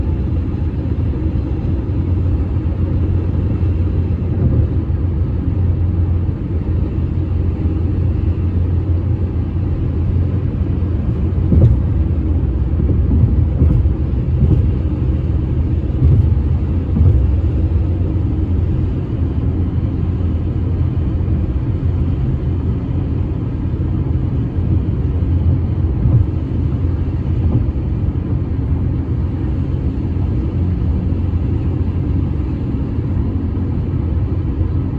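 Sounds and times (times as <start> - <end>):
car road rumble: 0.0 - 34.9
car bumps: 4.4 - 4.8, 11.0 - 15.2, 15.8 - 17.6, 25.9 - 26.5, 27.4 - 28.8.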